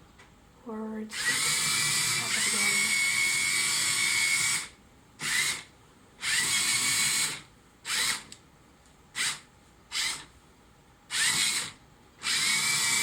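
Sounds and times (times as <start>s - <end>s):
robot motors whirring: 1.1s - 5.6s, 6.2s - 8.3s, 11.1s - 13.0s.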